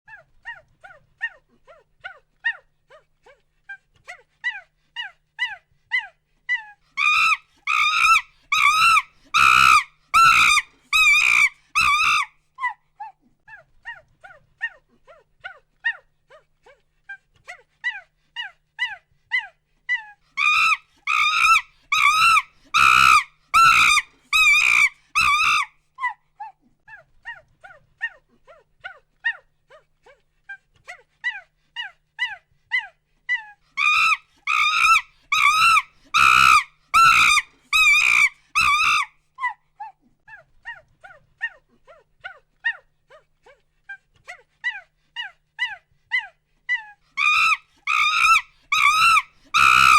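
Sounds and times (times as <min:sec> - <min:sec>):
chimpanzee hoots: 0:07.0 - 0:12.3, 0:20.4 - 0:25.7, 0:33.8 - 0:39.1, 0:47.2 - 0:49.9
chimpanzee screams: 0:07.0 - 0:12.3, 0:20.4 - 0:26.2, 0:32.2 - 0:40.0, 0:44.7 - 0:49.9.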